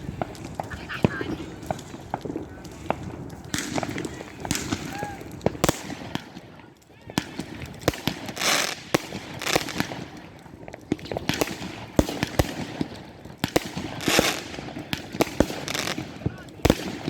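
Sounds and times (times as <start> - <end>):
fireworks bangs: 0.0 - 17.0
fireworks hissing: 0.0 - 17.0.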